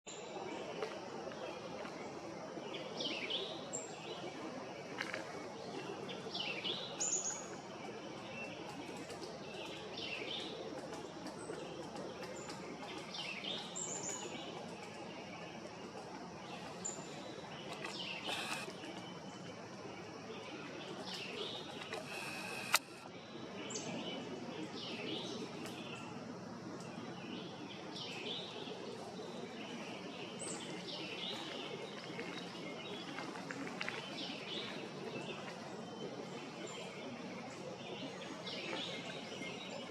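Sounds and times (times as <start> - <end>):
steady background hiss: 9.5 - 32.0
birds chirping: 12.9 - 19.8, 21.1 - 23.1
sharp click: 21.8 - 23.0.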